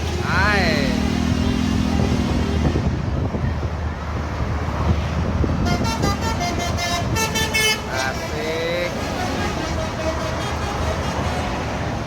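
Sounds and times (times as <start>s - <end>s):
traffic noise: 0.0s - 12.0s
bus horn playing a tune: 5.6s - 11.8s.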